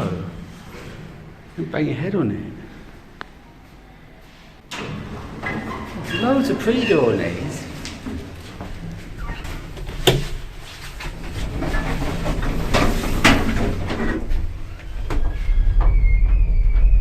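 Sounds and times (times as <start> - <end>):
sliding lift doors closing: 4.3 - 16.4
lift clicks and knocks: 7.8 - 10.5
lift low rumble: 8.7 - 17.0
high whine: 14.5 - 17.0.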